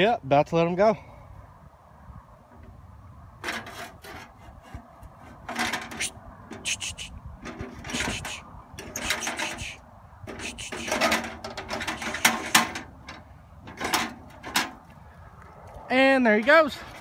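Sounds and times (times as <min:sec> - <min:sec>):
rustling and scraping: 0:03.4 - 0:15.0.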